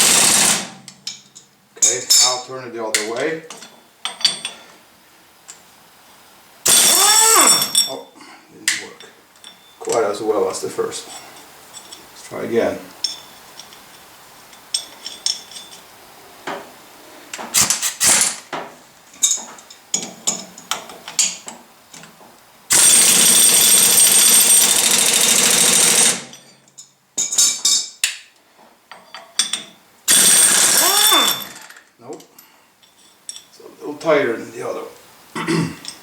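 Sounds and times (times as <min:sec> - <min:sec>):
impact wrench hammering: 0:00.0 - 0:00.8, 0:06.7 - 0:07.8, 0:17.5 - 0:18.4, 0:22.7 - 0:26.4, 0:30.1 - 0:31.7.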